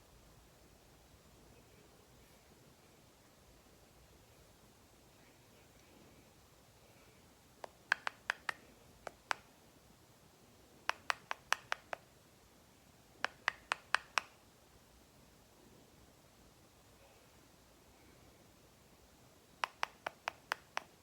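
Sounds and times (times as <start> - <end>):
parrot tongue clicks: 7.6 - 9.5, 13.2 - 14.4, 19.6 - 21.0.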